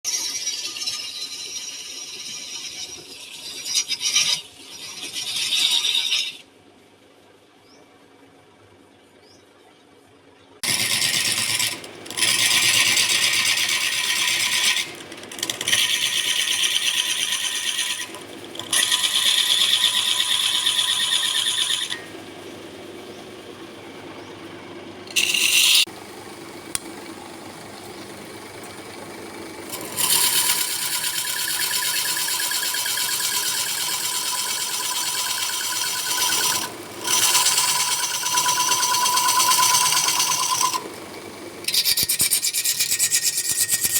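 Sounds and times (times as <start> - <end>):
tool cutting wood on lathe: 10.6 - 22.2, 25.1 - 25.9, 29.6 - 41.0, 41.6 - 43.9.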